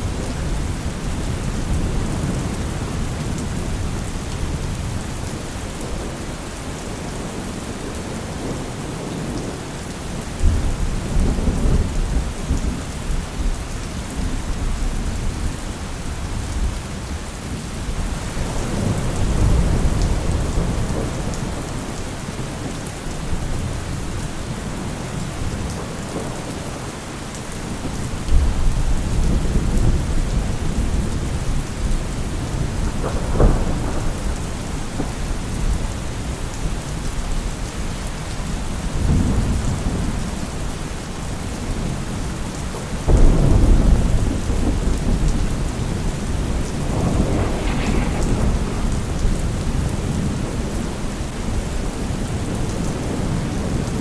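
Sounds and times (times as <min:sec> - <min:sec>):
rain pouring: 0:00.0 - 0:54.0
thunder rumbling: 0:18.0 - 0:22.5, 0:27.7 - 0:36.8, 0:43.0 - 0:54.0.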